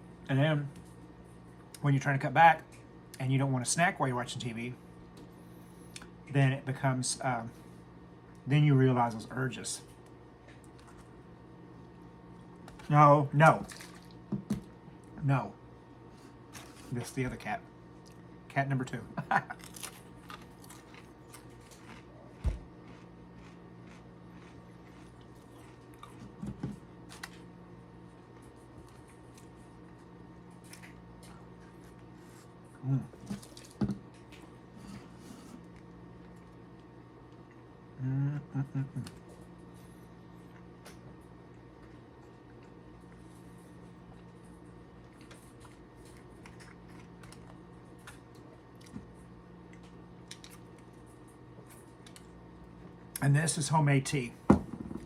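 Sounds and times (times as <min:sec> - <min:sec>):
steady low hum: 0:00.0 - 0:55.0
low mumble: 0:38.0 - 0:39.2.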